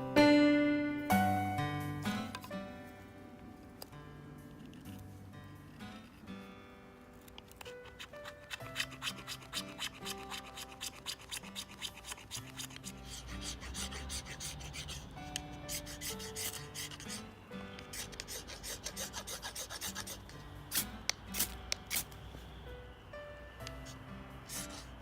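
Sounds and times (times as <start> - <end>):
quiet background music: 0.0 - 25.0
rapid rhythmic rasping strokes: 7.6 - 21.0.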